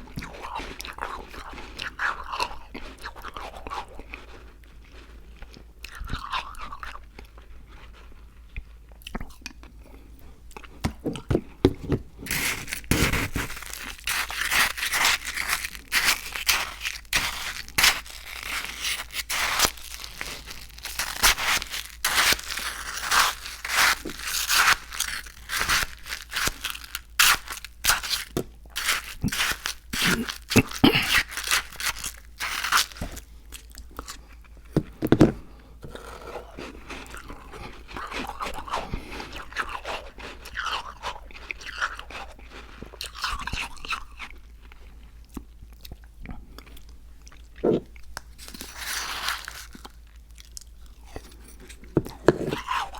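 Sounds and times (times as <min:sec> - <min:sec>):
close crunching: 0:12.2 - 0:34.3, 0:48.4 - 0:52.9.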